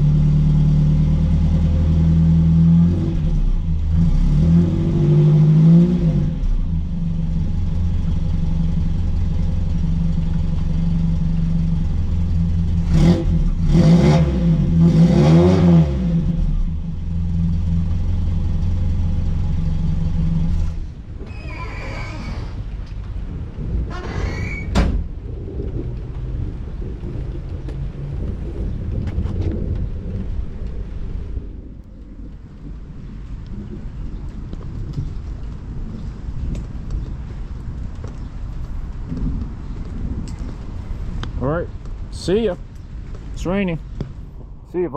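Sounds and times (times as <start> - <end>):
car engine idling and revving: 0.0 - 21.2.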